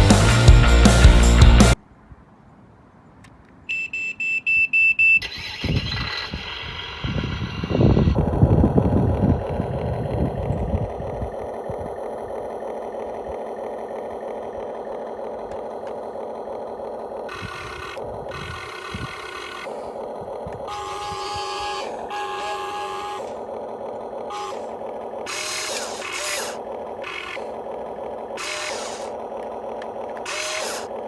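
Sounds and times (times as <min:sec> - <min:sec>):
simulated diesel engine: 0:00.0 - 0:01.8, 0:04.8 - 0:31.0
short beeps: 0:03.7 - 0:05.3.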